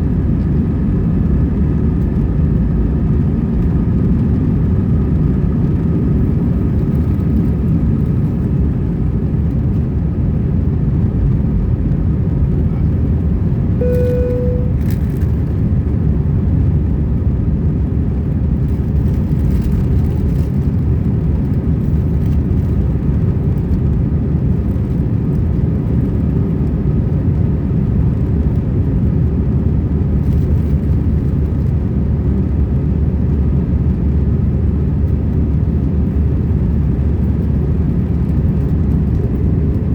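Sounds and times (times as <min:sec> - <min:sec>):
aircraft cabin engine rumble: 0:00.0 - 0:39.9
cabin chime tone: 0:13.8 - 0:14.9.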